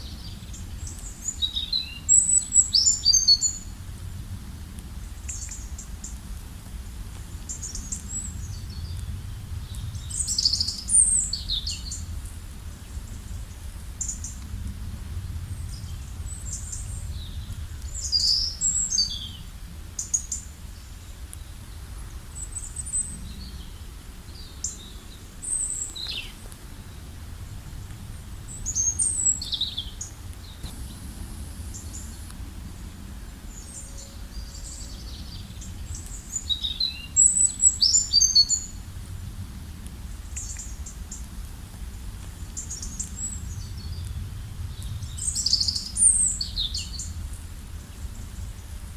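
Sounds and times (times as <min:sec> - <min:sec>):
songbirds chirping: 0:00.0 - 0:04.2, 0:05.0 - 0:38.9, 0:40.1 - 0:48.9
low rumble: 0:08.1 - 0:18.1, 0:26.7 - 0:36.3.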